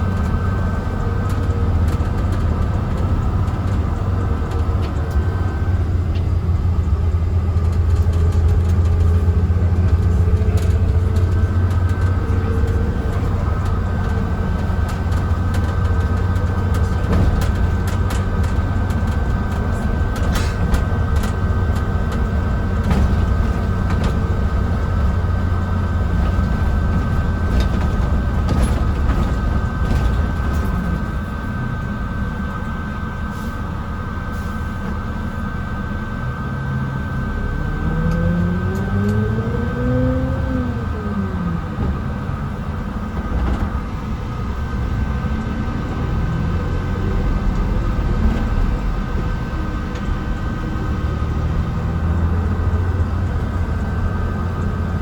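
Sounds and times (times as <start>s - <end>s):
bus engine and road rumble: 0.0s - 55.0s
heater whine: 0.0s - 55.0s
rattles: 1.2s - 31.3s.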